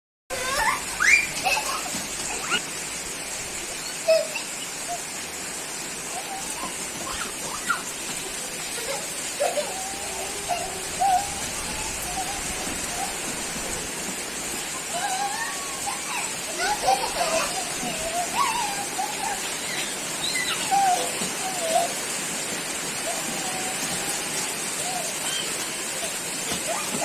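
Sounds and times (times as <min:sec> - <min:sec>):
steady rain falling: 0:00.3 - 0:27.0
faint voices calling: 0:14.6 - 0:27.0.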